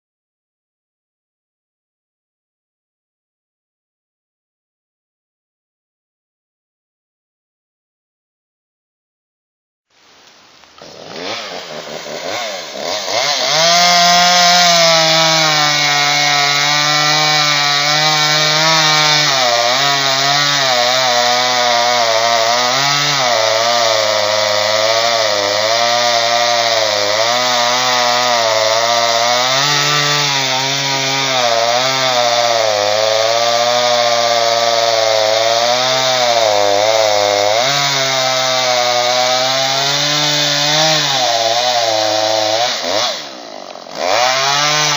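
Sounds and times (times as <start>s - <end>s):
chainsaw cutting wood: 10.7s - 44.9s.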